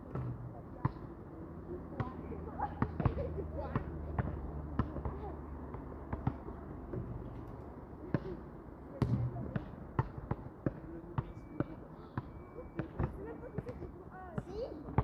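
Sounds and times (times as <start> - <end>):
basketballs bouncing on a court: 0.0 - 1.3, 1.9 - 15.0.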